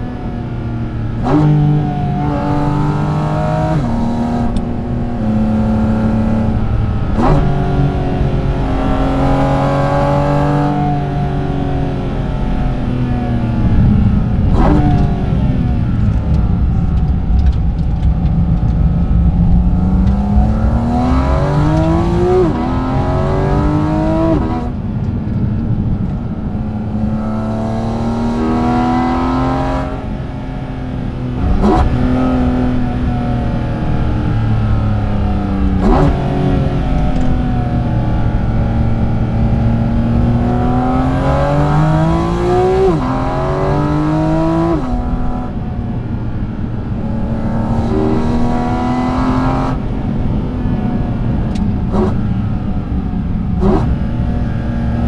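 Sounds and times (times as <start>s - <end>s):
car engine revving: 0.0s - 55.0s.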